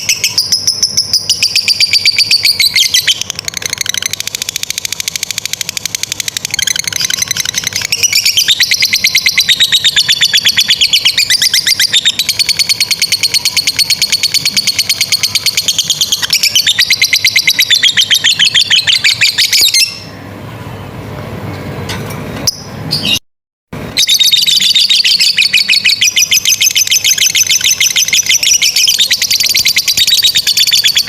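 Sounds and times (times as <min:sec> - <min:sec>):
lovebird shrill chattering: 0:00.0 - 0:20.1.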